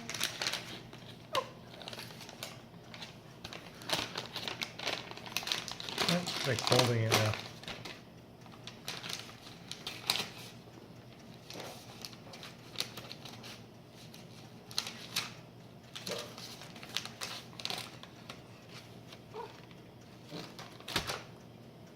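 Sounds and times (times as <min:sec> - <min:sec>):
paper crunching: 0:00.0 - 0:08.0, 0:08.8 - 0:10.6, 0:16.0 - 0:19.7
faint steady hum: 0:00.0 - 0:21.9.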